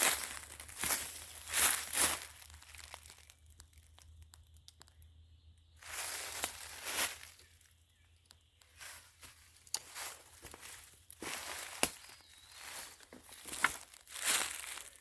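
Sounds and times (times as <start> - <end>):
footsteps crunching through dry leaves: 0.0 - 3.8, 5.8 - 7.7, 8.7 - 15.0
twig snapping: 2.2 - 5.1, 8.2 - 12.3.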